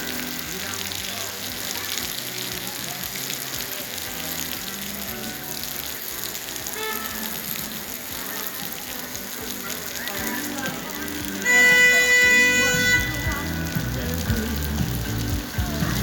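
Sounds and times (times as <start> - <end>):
heavy rain falling: 0.0 - 16.0.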